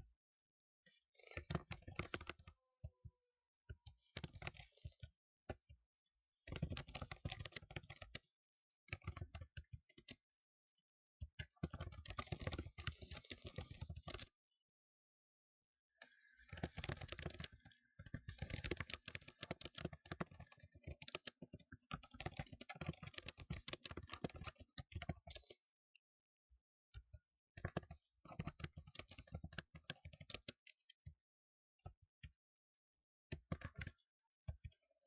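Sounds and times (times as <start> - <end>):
computer keyboard typing: 1.5 - 2.4, 6.6 - 8.2, 11.7 - 14.2, 16.1 - 25.6, 27.6 - 30.6, 33.3 - 34.0.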